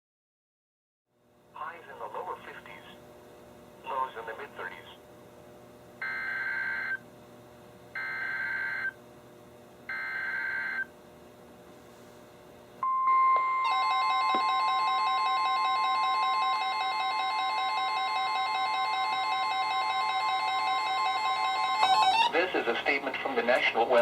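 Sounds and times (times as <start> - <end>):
steady alarm tone: 6.0 - 7.0, 8.0 - 9.0, 9.9 - 10.9, 12.8 - 22.4.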